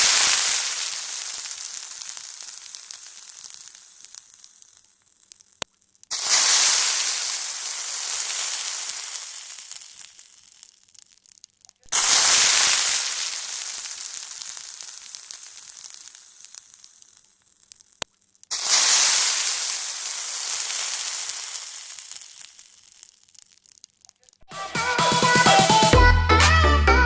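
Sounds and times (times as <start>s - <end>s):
food sizzling in hot oil: 0.0s - 24.5s
music: 24.5s - 27.0s.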